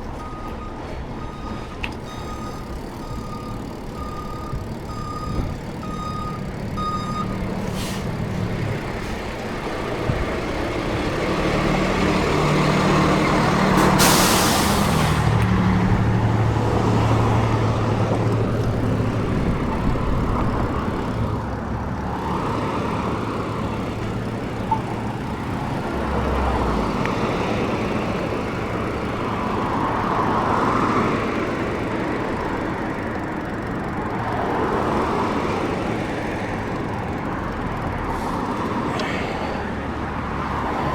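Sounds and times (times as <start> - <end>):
large vehicle engine running: 0.0 - 40.9
road traffic: 0.0 - 40.9
loud hiss of air: 13.8 - 15.2.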